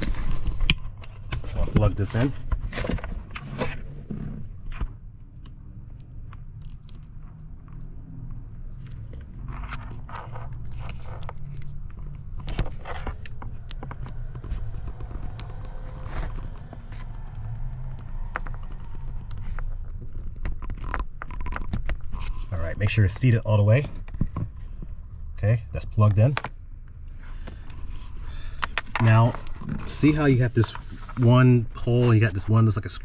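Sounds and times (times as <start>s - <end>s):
plastic connector scraping and clicking: 0.0s - 7.9s, 8.7s - 24.6s.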